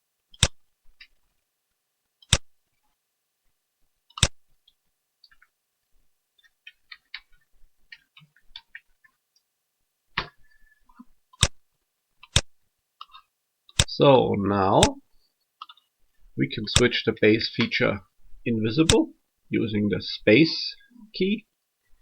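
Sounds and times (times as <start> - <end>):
computer mouse clicks: 0.3 - 0.6, 2.2 - 2.5, 4.1 - 4.4, 12.2 - 13.9.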